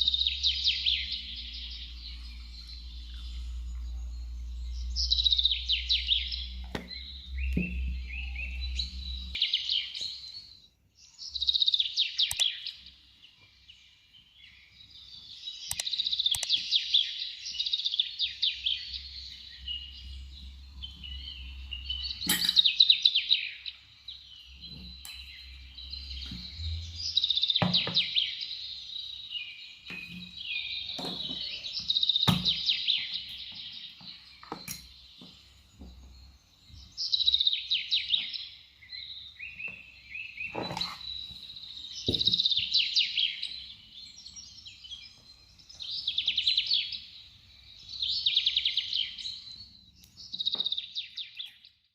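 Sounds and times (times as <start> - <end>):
songbird singing trilled phrases: 0.0 - 51.9
sharp clicks: 12.2 - 12.6, 15.7 - 16.7.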